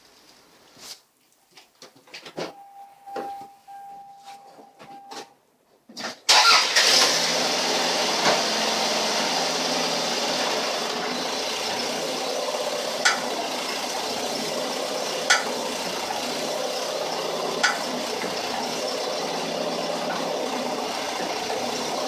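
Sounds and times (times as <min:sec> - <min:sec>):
car engine starting and running: 0:06.3 - 0:22.0.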